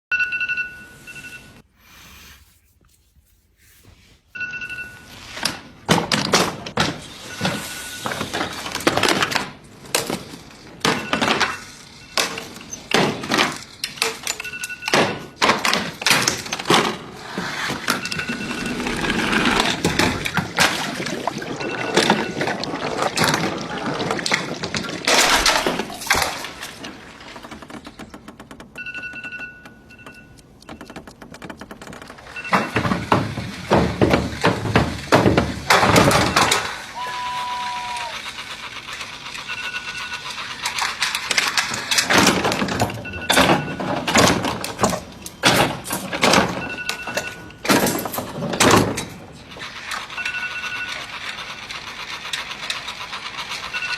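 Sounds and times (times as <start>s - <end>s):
alarm clock beeping: 0.1s - 2.1s, 4.4s - 5.4s, 14.4s - 15.4s, 17.9s - 20.0s, 28.8s - 30.9s, 39.4s - 40.5s, 50.1s - 51.2s, 53.6s - 53.9s.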